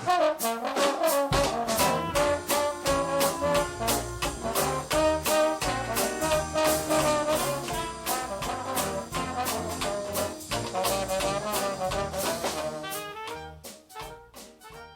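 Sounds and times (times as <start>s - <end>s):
upbeat jazz with brass horns: 0.0s - 14.9s.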